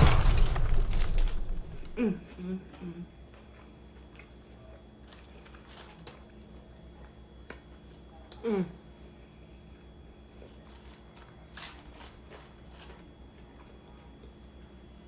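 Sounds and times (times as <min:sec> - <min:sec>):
steady low hum: 0:00.0 - 0:03.2
person humming mm: 0:02.0 - 0:03.1
soft chewing and mouth noises: 0:02.2 - 0:09.1, 0:10.2 - 0:15.0.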